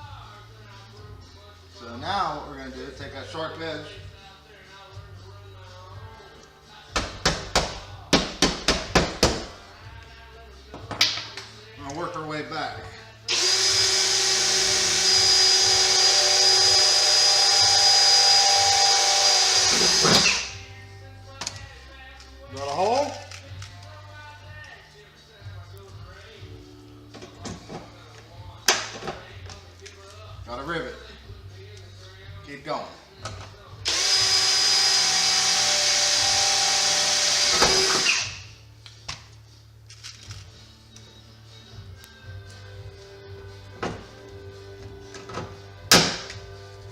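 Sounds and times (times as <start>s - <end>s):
electric drill whining: 13.3s - 20.5s, 33.9s - 38.4s.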